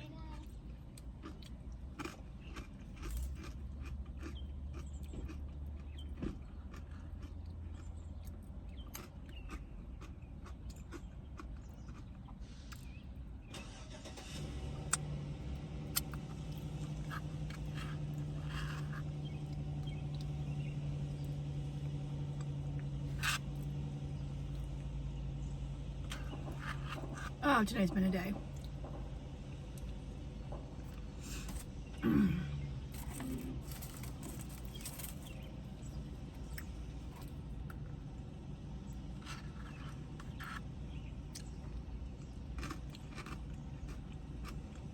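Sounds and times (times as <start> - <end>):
car engine humming: 11.7 - 44.9.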